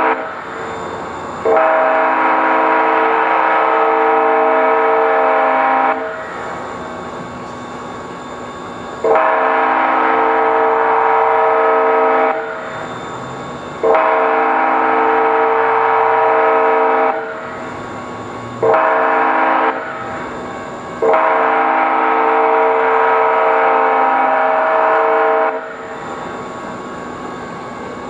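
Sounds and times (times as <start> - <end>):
train air horn blasts: 0.0 - 0.8, 1.4 - 6.5, 9.0 - 12.8, 13.8 - 17.7, 18.6 - 20.4, 21.0 - 26.0
train rumbling: 0.0 - 28.0.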